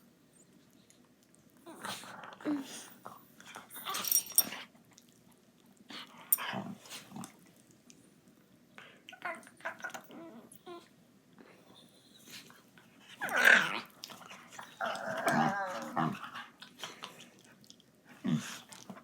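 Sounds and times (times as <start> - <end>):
dogs growling: 13.1 - 16.8, 18.1 - 19.0.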